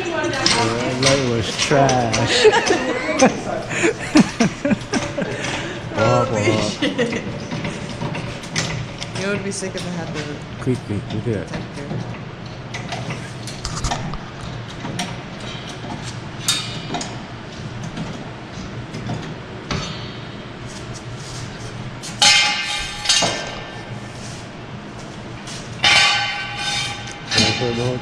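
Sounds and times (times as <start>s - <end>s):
steady low hum: 0.0s - 28.0s
ringing metallic strikes: 25.8s - 28.0s.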